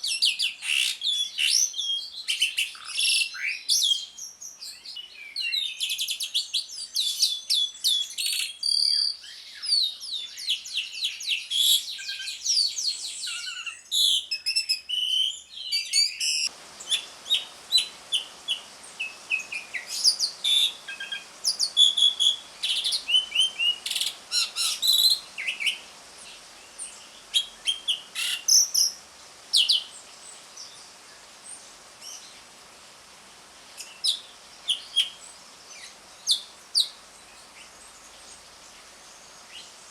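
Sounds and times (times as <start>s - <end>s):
steady hiss: 14.8s - 39.9s
starling chattering calls: 16.5s - 30.0s.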